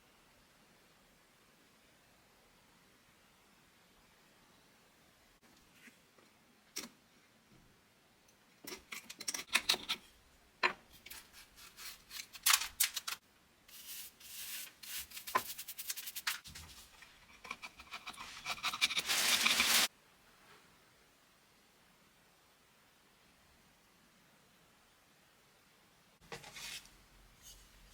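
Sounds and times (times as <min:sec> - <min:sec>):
hand scraping and rubbing: 0:13.7 - 0:19.9.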